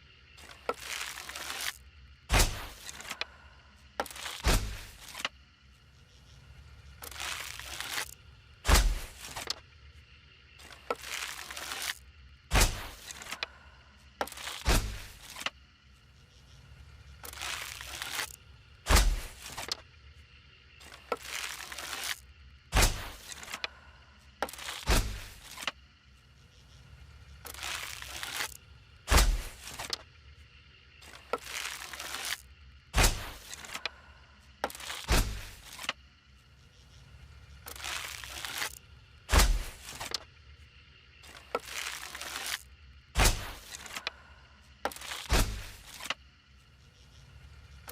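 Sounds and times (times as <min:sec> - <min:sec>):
arrow shots with thuds: 0:02.3 - 0:02.8, 0:04.4 - 0:04.9, 0:08.6 - 0:09.1, 0:12.5 - 0:13.0, 0:14.6 - 0:15.1, 0:18.9 - 0:19.4, 0:22.7 - 0:23.2, 0:24.9 - 0:25.4, 0:29.1 - 0:29.6, 0:33.0 - 0:33.4, 0:35.1 - 0:35.6, 0:39.3 - 0:39.8, 0:43.2 - 0:43.6, 0:45.3 - 0:45.8.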